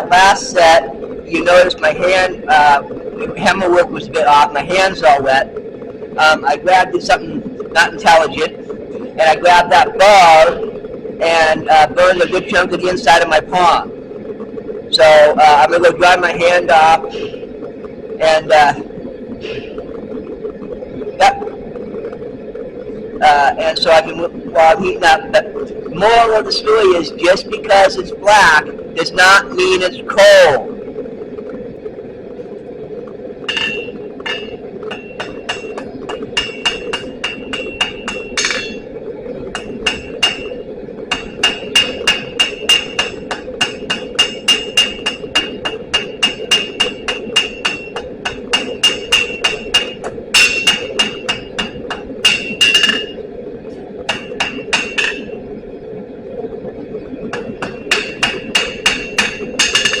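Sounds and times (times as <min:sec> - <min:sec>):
steady hum: 0:00.0 - 1:00.0
hammer striking anvil: 0:33.5 - 0:35.8, 0:36.4 - 0:38.8, 0:39.6 - 0:53.2, 0:54.1 - 0:55.2, 0:57.4 - 1:00.0.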